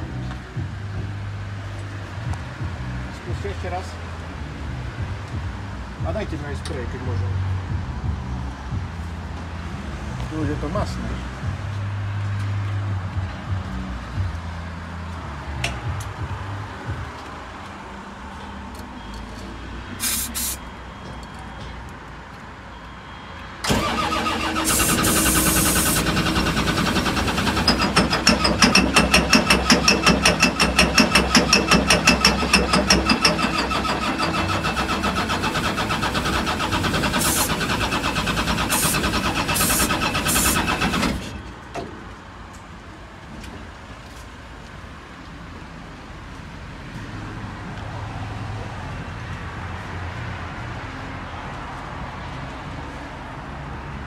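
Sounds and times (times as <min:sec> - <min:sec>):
diesel engine cranking: 0:23.6 - 0:41.6.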